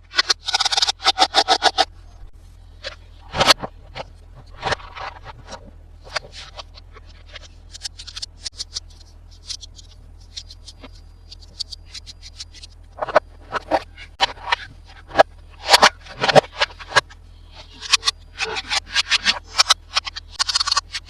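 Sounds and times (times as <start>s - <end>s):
plastic toys clicking and tapping: 0.1s - 1.9s, 17.8s - 21.0s.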